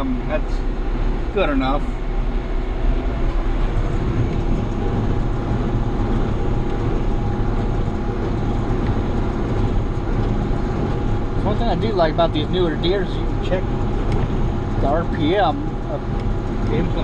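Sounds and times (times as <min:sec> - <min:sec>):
tractor running steadily: 0:00.0 - 0:17.0
hay baler running: 0:01.3 - 0:14.0.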